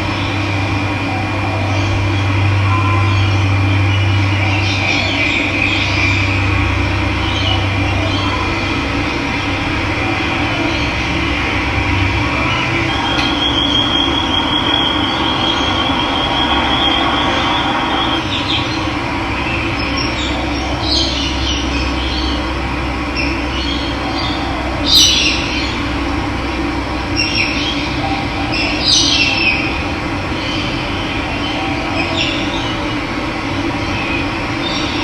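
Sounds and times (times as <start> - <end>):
birds chirping: 0.0 - 26.0.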